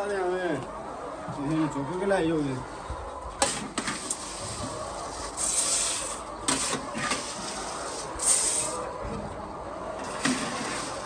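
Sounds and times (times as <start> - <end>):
rustling and scraping: 3.4 - 8.8, 10.0 - 11.0.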